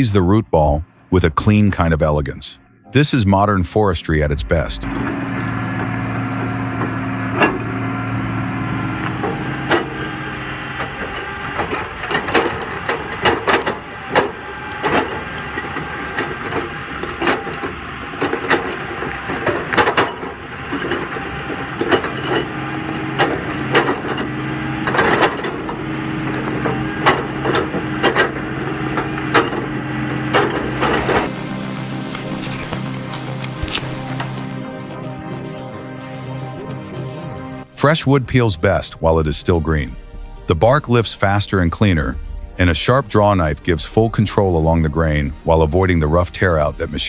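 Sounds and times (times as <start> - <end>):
machine engine running: 4.8 - 24.5, 30.9 - 37.7
wood and roots cracking: 31.2 - 34.5.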